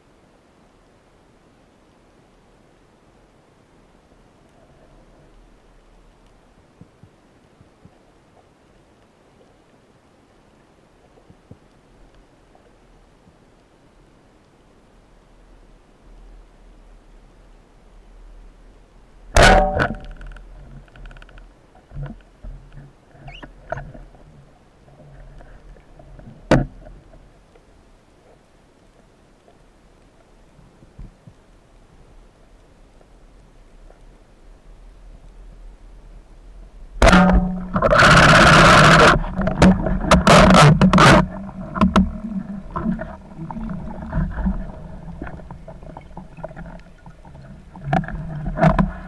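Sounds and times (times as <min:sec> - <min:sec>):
water rushing and splashing: 0:03.0 - 0:49.0
underwater sharp knocks: 0:19.3 - 0:24.3, 0:26.0 - 0:27.0, 0:37.0 - 0:49.0
sharp knocks: 0:19.4 - 0:20.4, 0:37.0 - 0:42.2.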